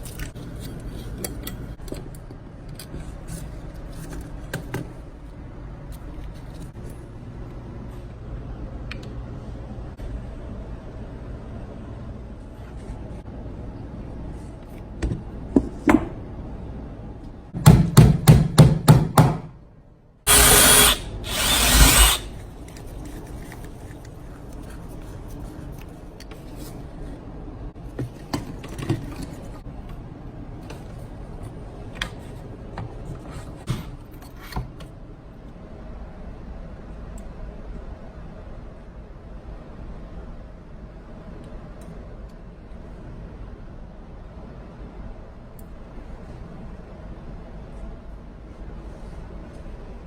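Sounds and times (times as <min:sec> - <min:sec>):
power tool running: 0:20.3 - 0:22.3.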